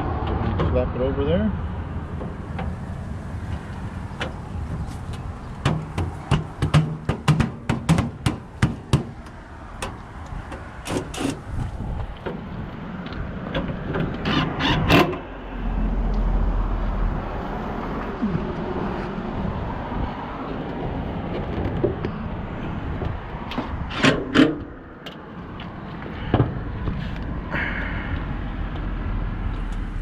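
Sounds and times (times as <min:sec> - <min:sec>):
sheet metal clanks and knocks: 0:05.6 - 0:09.2.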